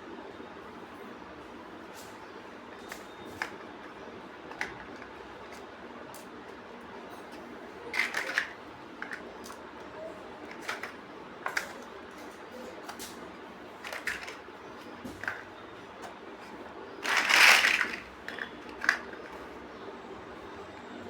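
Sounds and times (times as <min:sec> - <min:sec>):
plastic bricks clicking together: 0:07.9 - 0:09.6, 0:10.5 - 0:11.9, 0:13.8 - 0:14.4, 0:17.0 - 0:19.4.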